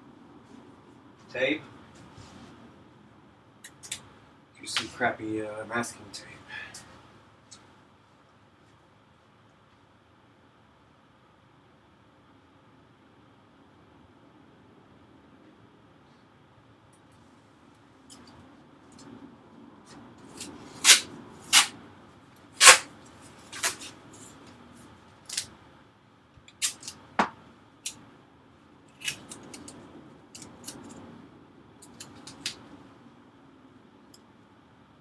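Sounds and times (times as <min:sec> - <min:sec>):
masking tape tearing: 0:20.3 - 0:21.8, 0:22.6 - 0:22.9, 0:23.5 - 0:24.0, 0:26.5 - 0:27.0, 0:28.9 - 0:29.7.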